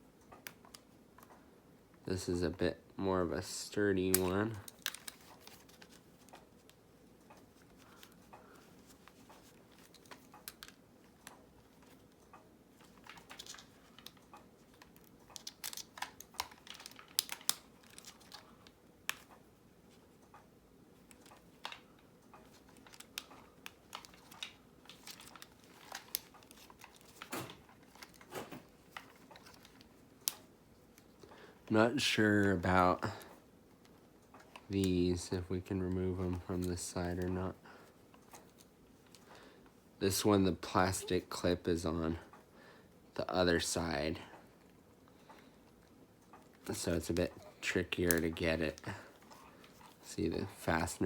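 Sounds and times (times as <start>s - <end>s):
plastic clips clicking: 4.0s - 6.4s, 7.4s - 18.5s, 21.1s - 31.3s.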